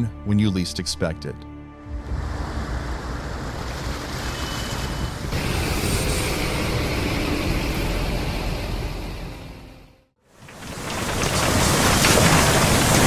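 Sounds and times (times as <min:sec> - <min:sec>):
floodwater rushing: 0:01.9 - 0:08.0, 0:10.4 - 0:13.0.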